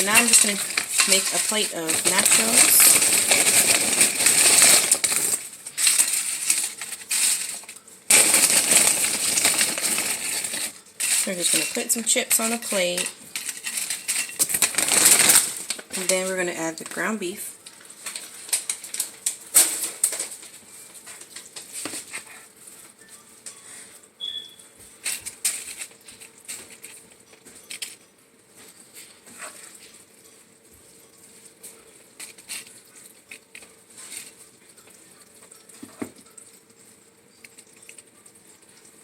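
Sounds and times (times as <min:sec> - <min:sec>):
spoon scraping a pan: 0:00.0 - 0:07.7
tortilla chips crackling: 0:00.0 - 0:16.3, 0:17.6 - 0:22.9, 0:24.2 - 0:39.0.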